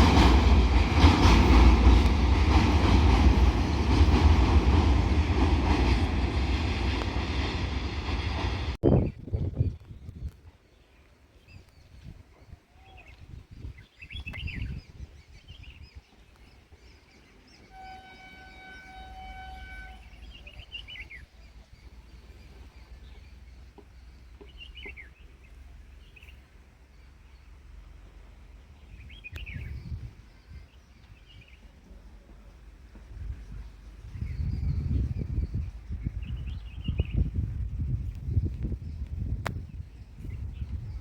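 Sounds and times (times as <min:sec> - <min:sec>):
birds chirping: 0:01.0 - 0:37.3
train horn: 0:17.6 - 0:20.7.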